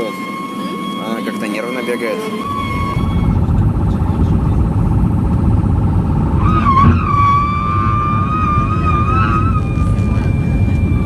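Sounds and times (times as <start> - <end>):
loud whistle: 0.0 - 3.5, 6.3 - 11.0
airliner cabin roar: 0.0 - 11.0.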